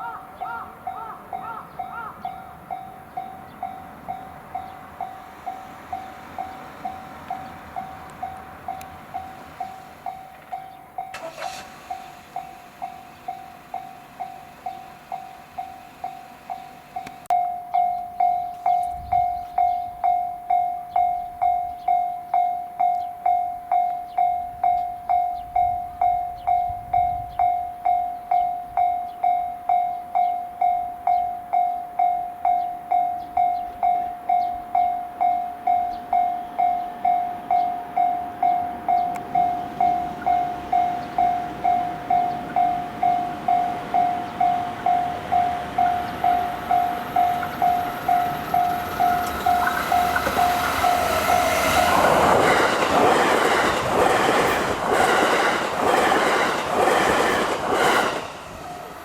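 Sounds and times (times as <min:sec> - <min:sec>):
level crossing bell dinging: 0:01.4 - 0:51.8
train wheels clattering: 0:39.0 - 0:59.0.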